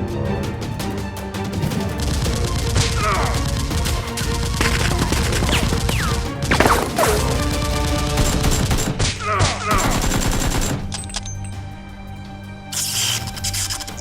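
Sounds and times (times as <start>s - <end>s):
background music: 0.0s - 14.0s
rapid gunfire bursts: 1.6s - 9.0s, 9.7s - 10.8s.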